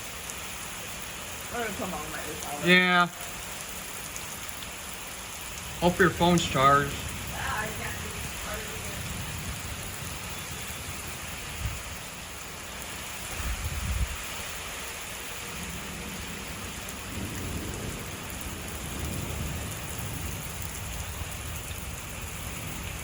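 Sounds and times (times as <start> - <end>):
steady rain falling: 0.0 - 23.0
thunder rumbling: 1.4 - 4.6, 5.4 - 14.4, 15.3 - 23.0.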